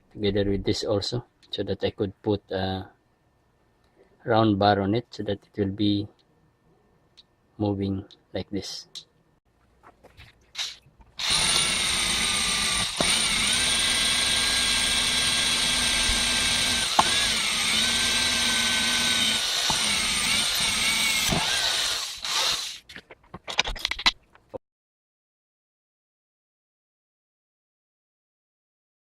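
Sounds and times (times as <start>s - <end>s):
power drill whining: 11.2s - 22.8s.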